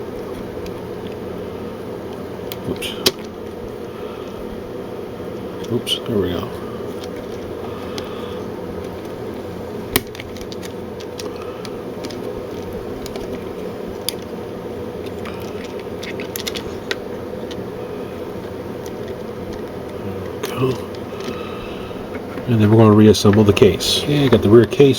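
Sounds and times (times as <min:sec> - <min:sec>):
room hum: 0:00.0 - 0:24.9
plastic parts clicking: 0:15.1 - 0:17.6.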